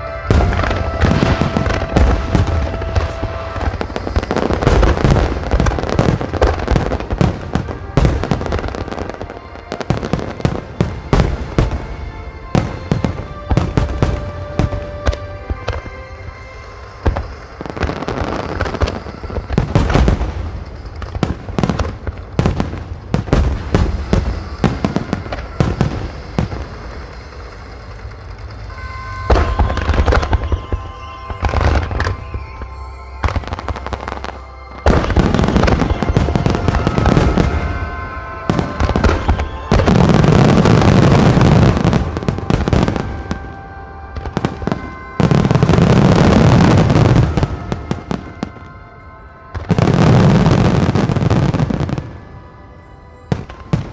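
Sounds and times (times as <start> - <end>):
fireworks bursting with bangs: 0.0 - 53.9
music playing: 0.0 - 53.9.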